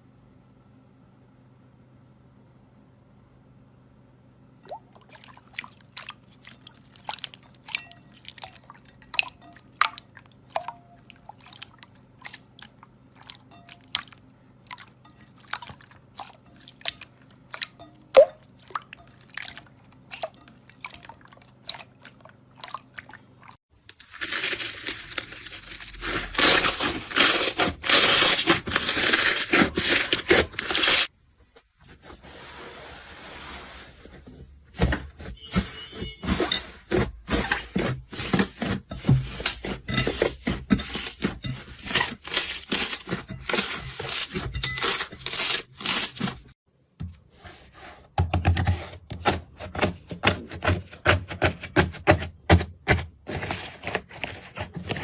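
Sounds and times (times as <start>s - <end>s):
loud crunching: 23.9s - 31.1s.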